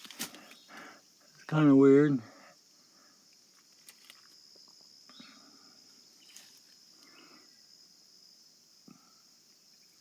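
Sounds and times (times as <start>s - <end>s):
insect chorus drone: 0.0s - 10.0s
soft ticks and rustles: 3.3s - 4.8s.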